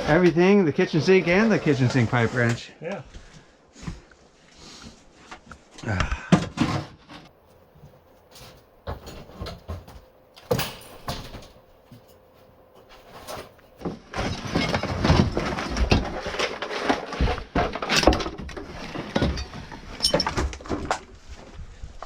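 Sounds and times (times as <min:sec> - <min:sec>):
knocks of junk being handled: 0:06.1 - 0:21.1
clattering and scraping: 0:06.4 - 0:21.5.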